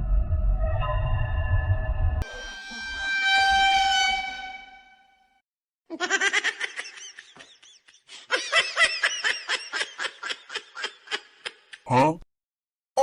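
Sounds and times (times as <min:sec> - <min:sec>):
held musical tone: 0:02.2 - 0:05.4.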